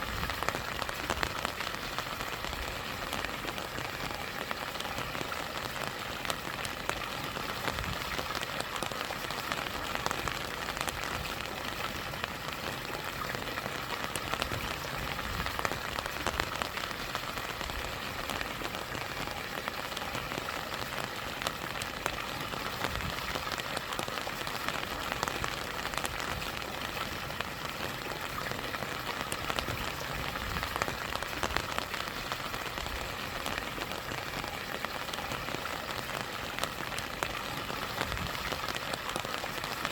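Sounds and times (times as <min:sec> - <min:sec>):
rain pattering: 0:00.0 - 0:39.9.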